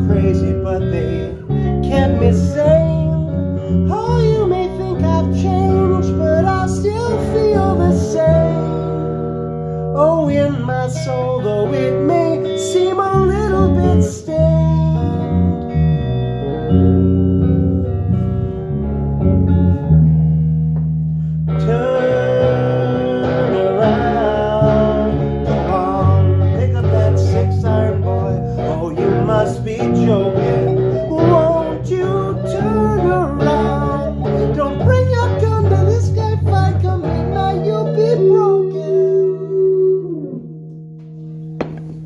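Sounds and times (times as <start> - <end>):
person singing: 0.0 - 9.2, 9.9 - 15.7, 21.6 - 40.6
band playing guitar-led song: 10.4 - 38.8.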